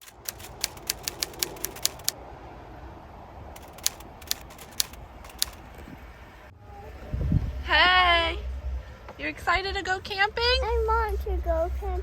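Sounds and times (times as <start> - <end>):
sharp key-like clicks: 0.0 - 2.2, 3.6 - 5.8
low background hum: 0.0 - 12.0.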